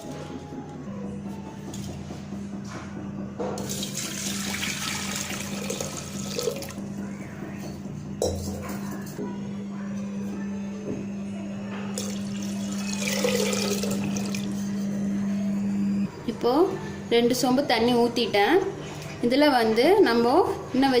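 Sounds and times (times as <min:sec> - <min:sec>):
water pouring into a pan: 0:03.7 - 0:06.7, 0:12.0 - 0:14.5.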